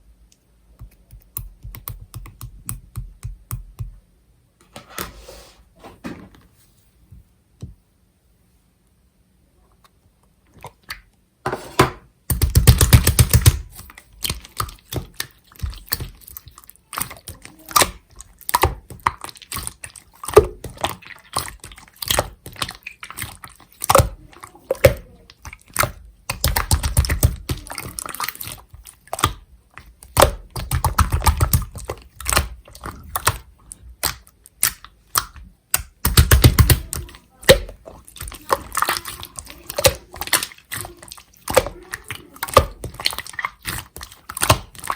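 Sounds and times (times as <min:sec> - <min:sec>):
slime squishing with wet pops: 0:00.3 - 0:04.0, 0:09.8 - 0:11.2, 0:12.2 - 0:44.9
rapid crackling slime pops: 0:12.3 - 0:44.9.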